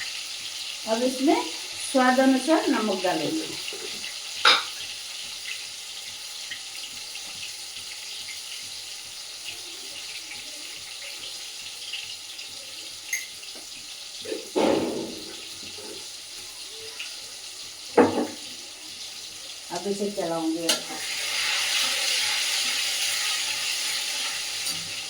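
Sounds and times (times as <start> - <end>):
tomatoes sizzling in hot oil: 0.0 - 25.0
utensil knocking against pan: 18.0 - 18.4.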